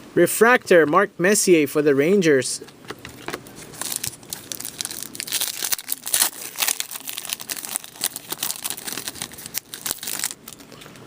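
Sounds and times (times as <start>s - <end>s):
wrapper crinkling: 3.1s - 10.8s.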